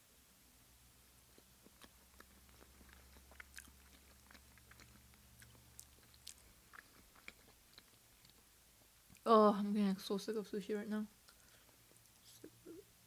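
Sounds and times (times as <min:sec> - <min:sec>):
wet chewing mouth clicks: 0:01.3 - 0:08.5.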